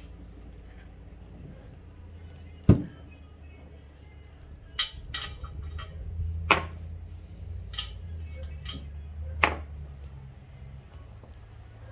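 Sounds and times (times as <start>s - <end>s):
low steady hum: 0.0s - 11.9s
metal parts clinking and knocking: 4.5s - 6.9s, 7.6s - 9.6s.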